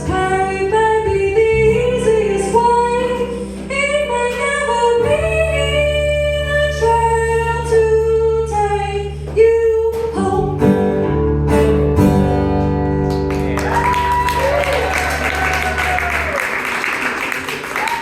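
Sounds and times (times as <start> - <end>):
woman singing: 0.0 - 11.2
acoustic guitar: 0.0 - 17.6
applause: 13.0 - 18.0.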